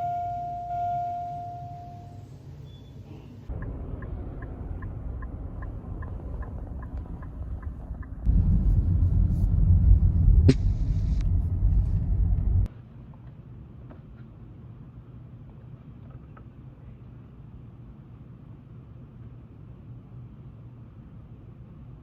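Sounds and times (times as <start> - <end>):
car road rumble: 3.4 - 12.7.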